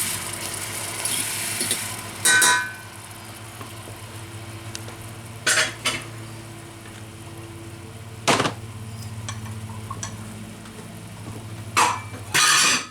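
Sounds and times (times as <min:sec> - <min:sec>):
shrimp sizzling in a pan: 0:00.0 - 0:04.6
steady low hum: 0:01.9 - 0:12.4.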